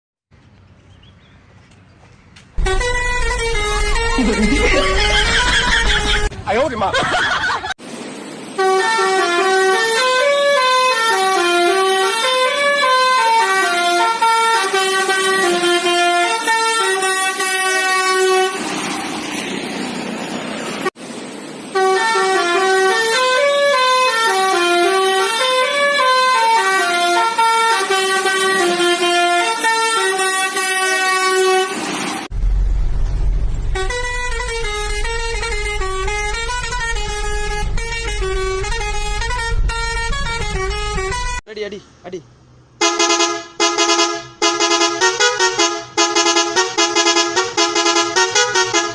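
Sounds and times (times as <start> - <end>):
musical truck horn: 2.6 - 6.4, 8.6 - 18.9, 21.7 - 32.3, 33.7 - 41.4, 42.8 - 48.9.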